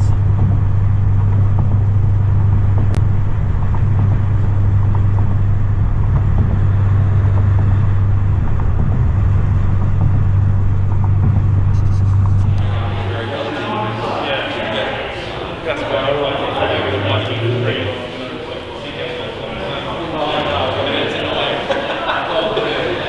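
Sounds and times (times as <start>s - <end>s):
car engine and exhaust drone: 0.0s - 23.0s
road noise: 10.6s - 23.0s.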